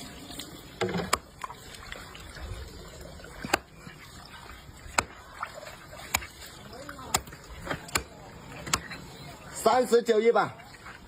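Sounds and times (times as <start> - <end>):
steady background noise: 0.0 - 11.0
knife chopping: 3.4 - 3.7, 4.9 - 5.2, 6.0 - 6.3, 7.1 - 8.9.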